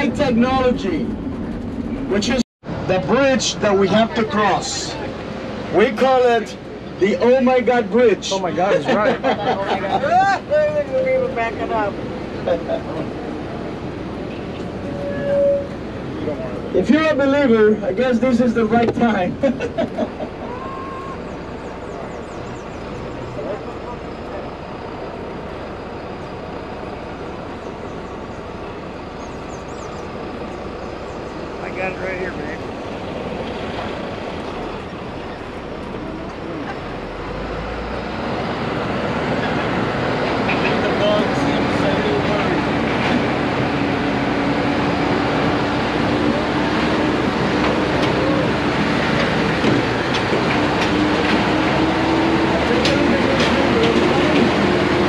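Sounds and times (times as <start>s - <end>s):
road noise: 0.0s - 55.0s
truck engine rumble: 0.0s - 55.0s
rattles and clanks: 52.7s - 54.7s.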